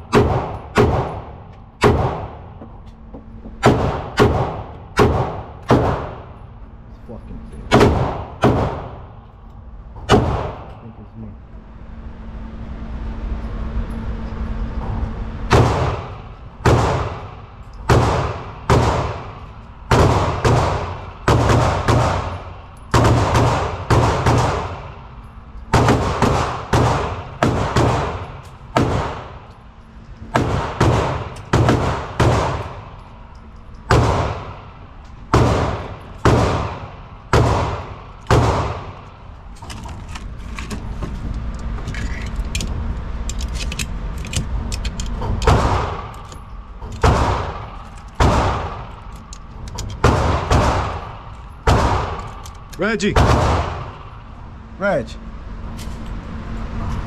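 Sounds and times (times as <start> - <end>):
steady low hum: 0.0 - 57.0
handgun shots: 3.6 - 6.3, 7.7 - 9.0, 10.1 - 10.8, 15.5 - 24.9, 25.7 - 29.5, 30.3 - 32.9, 33.9 - 34.6, 35.3 - 39.1, 45.4 - 46.3, 46.9 - 49.2, 49.9 - 52.5.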